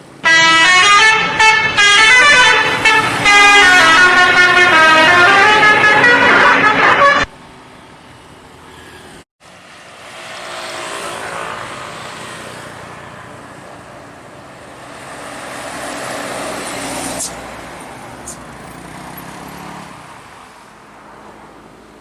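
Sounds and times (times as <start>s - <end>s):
vehicles passing: 0.0s - 22.0s.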